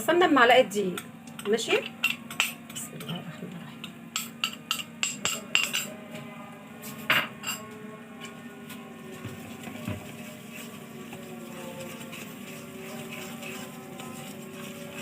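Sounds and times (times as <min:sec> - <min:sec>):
faint kitchen sounds: 0:00.0 - 0:15.0
metal spoon tapping a pot: 0:00.9 - 0:03.2, 0:04.1 - 0:05.9.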